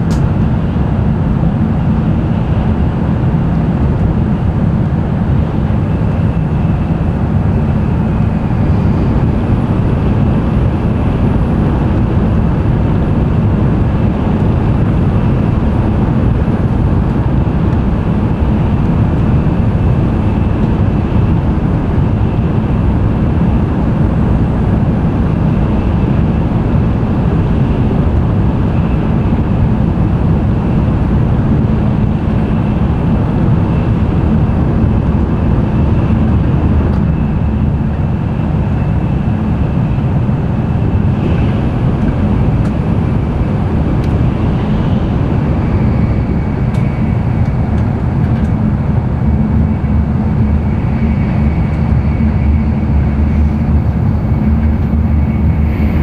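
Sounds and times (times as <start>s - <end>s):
train running noise inside cabin: 0.0s - 56.0s
faint high whine: 32.0s - 56.0s.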